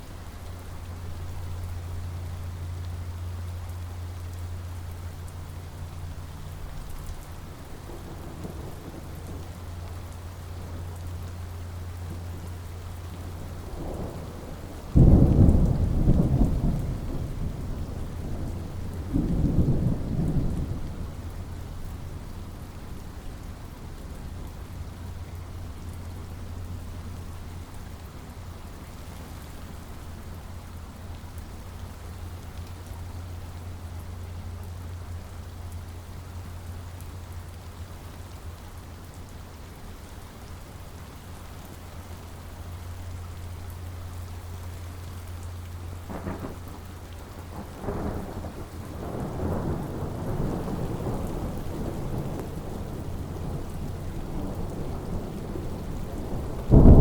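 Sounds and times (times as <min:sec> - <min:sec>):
steady rain: 0:00.0 - 0:57.0
thunder rolling: 0:46.1 - 0:57.0.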